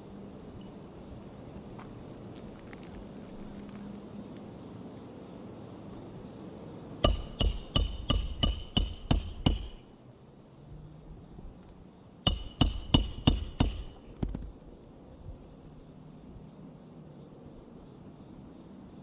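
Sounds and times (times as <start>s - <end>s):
hammering with metallic ring: 7.0s - 9.9s, 12.3s - 14.4s.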